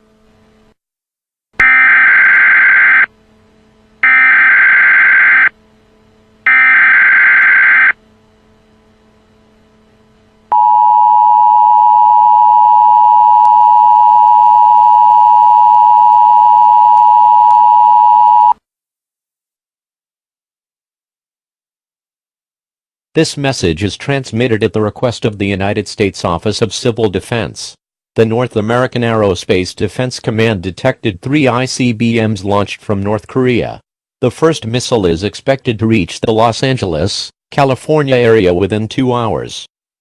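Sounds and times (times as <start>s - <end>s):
two-tone attention signal: 4.0s - 5.5s.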